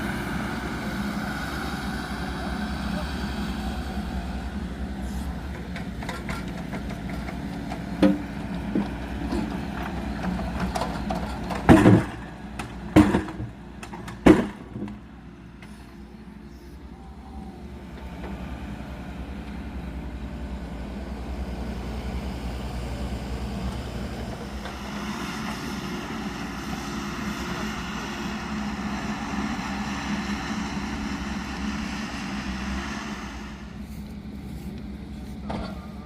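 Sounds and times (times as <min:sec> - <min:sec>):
engine running with low drone: 0:00.0 - 0:36.0
rushing noise: 0:24.5 - 0:33.9.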